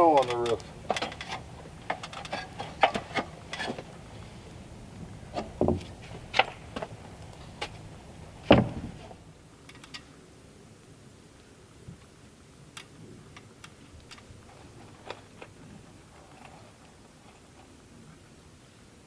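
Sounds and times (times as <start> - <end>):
knocks and clunks on wooden siding: 5.0 - 9.2.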